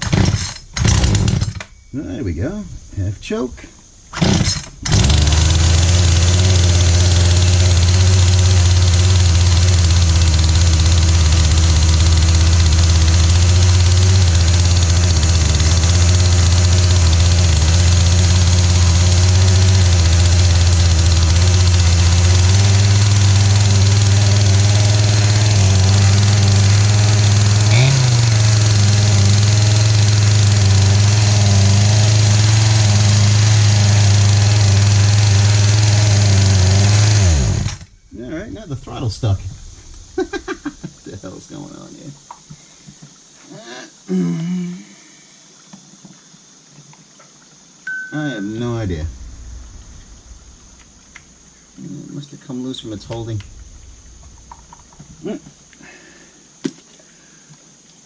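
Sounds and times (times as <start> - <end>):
chainsaw engine running steadily: 0.0 - 1.7, 4.2 - 41.0, 48.5 - 51.3, 52.8 - 56.8.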